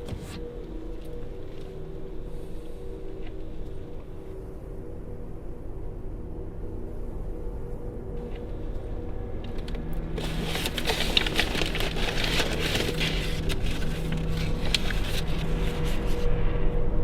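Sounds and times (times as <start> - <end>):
low droning film score: 0.0 - 17.0
dense crackling rustling noise: 9.4 - 16.3.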